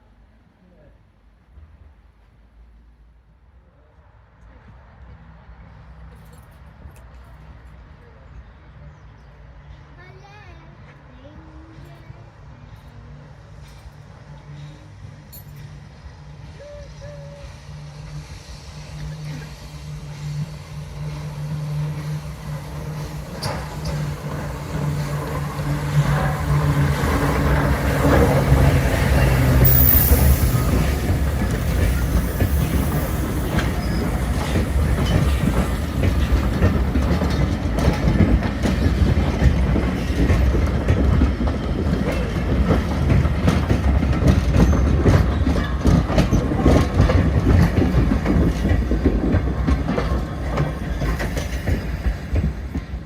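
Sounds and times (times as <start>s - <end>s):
train wheels clattering on rails: 17.5s - 53.0s.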